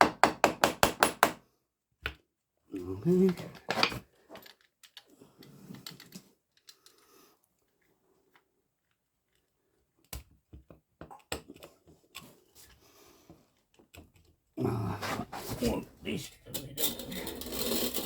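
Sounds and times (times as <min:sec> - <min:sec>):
clicks and rattles of hand tools: 0:03.2 - 0:07.1, 0:16.5 - 0:18.0
small metal parts rattling: 0:16.5 - 0:18.0.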